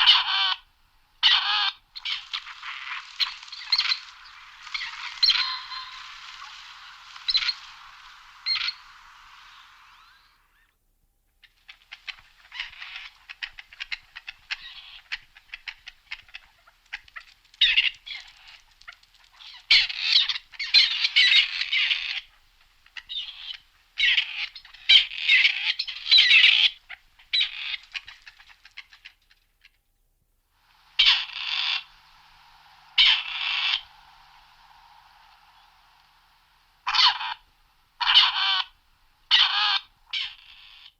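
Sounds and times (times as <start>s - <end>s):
partridge rasping chatter: 2.0s - 9.9s.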